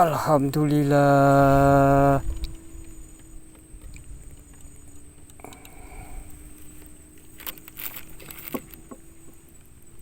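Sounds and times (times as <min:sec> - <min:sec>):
high-pitched insect drone: 0:00.0 - 0:10.0
clicks and rustles: 0:06.4 - 0:10.0.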